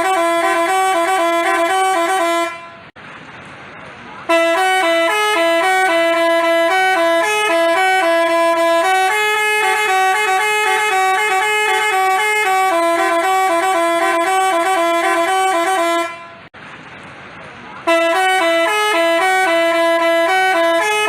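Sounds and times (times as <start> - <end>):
bus horn melody: 0.0 - 3.0, 4.3 - 16.5, 17.8 - 21.0.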